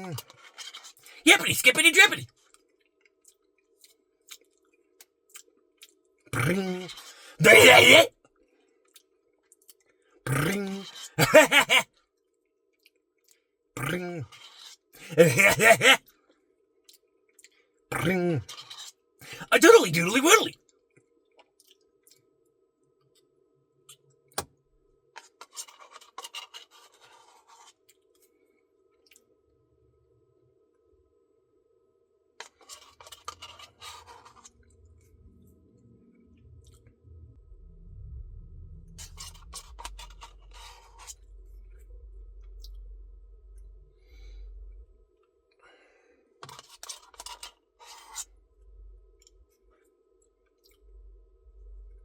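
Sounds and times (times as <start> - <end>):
spoon scraping ice cream cup: 25.2 - 27.8, 32.4 - 34.6
low rumble: 34.7 - 45.1, 48.4 - 49.6, 50.7 - 52.0.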